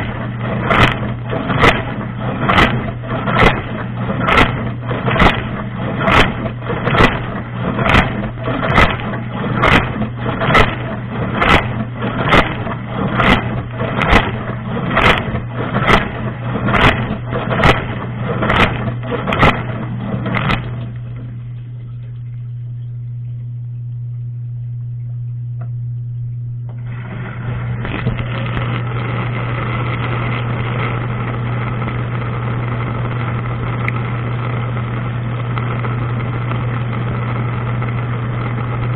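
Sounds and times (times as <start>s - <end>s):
water spray splashing: 0.0s - 22.2s
pump click: 0.0s - 31.1s
dishwasher motor hum: 0.0s - 38.9s.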